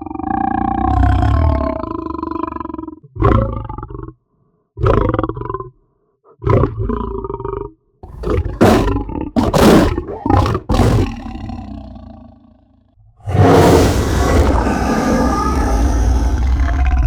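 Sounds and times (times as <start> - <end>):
lion growling and roaring: 8.0 - 17.0.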